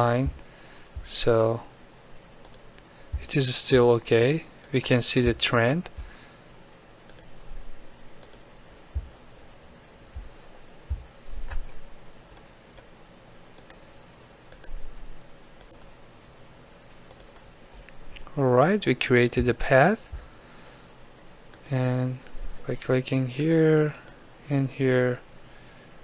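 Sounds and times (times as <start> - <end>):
computer mouse clicking: 2.4 - 3.3, 7.1 - 7.4, 8.2 - 9.1, 13.6 - 13.9, 14.5 - 14.8, 15.6 - 15.9, 17.1 - 18.3, 21.5 - 21.8, 23.4 - 24.2
dull low thud: 10.9 - 11.7.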